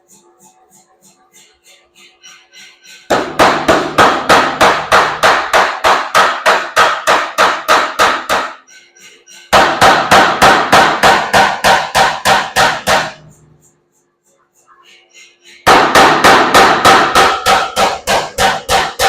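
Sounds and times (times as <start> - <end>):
power hammer blows on steel: 2.6 - 13.4, 15.5 - 19.0.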